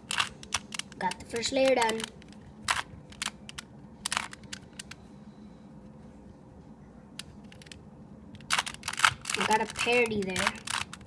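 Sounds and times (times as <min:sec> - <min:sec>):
plastic puzzle cube clicks: 0:00.1 - 0:05.0, 0:08.4 - 0:11.0.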